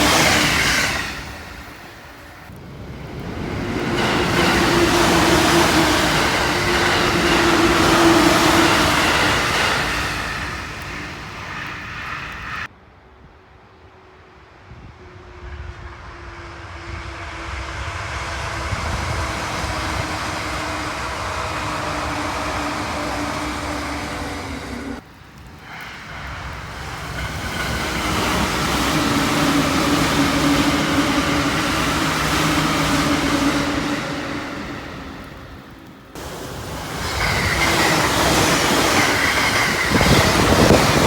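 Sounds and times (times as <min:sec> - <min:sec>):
express trains approaching: 0:00.0 - 0:41.0
steady train hum: 0:00.0 - 0:41.0.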